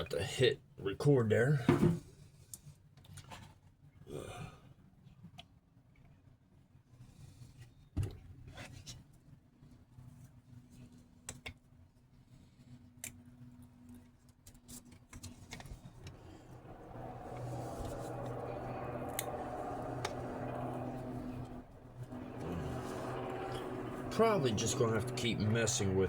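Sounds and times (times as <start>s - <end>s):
vehicle engine hum: 15.3s - 26.0s.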